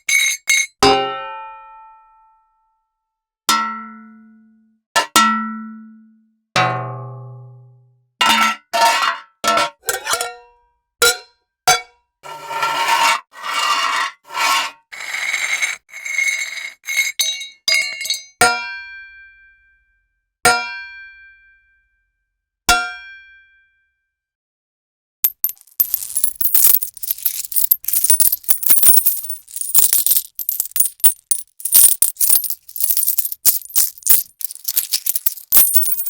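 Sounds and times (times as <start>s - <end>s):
metal scraping rubs: 12.2s - 17.4s, 25.8s - 36.0s
metal clanks: 25.4s - 36.0s.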